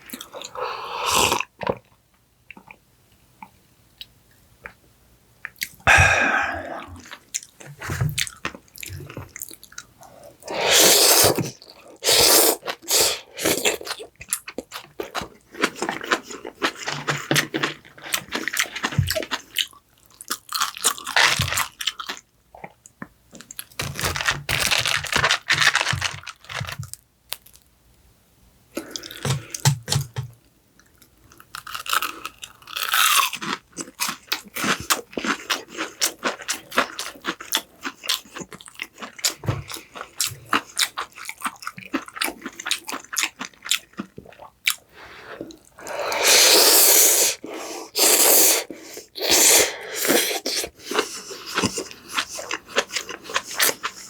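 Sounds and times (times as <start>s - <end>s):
crunchy bites and chewing: 31.3s - 44.8s.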